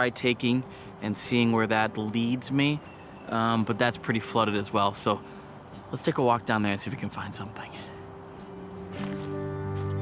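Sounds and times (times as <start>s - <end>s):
background music held chords: 7.9s - 10.0s.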